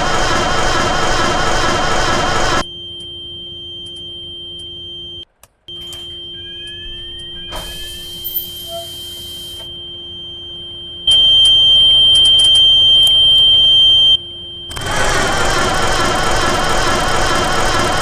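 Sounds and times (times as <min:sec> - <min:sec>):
engine cranking: 0:00.0 - 0:02.6, 0:14.7 - 0:18.0
car warning buzzer: 0:00.0 - 0:18.0
sharp clicks: 0:14.7 - 0:16.2.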